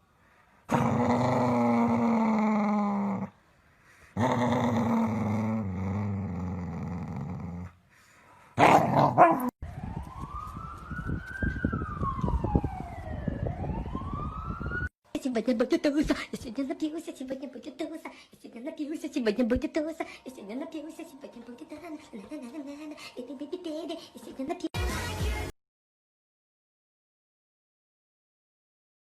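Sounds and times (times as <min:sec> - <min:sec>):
dog siren-like wail: 0:09.6 - 0:15.0.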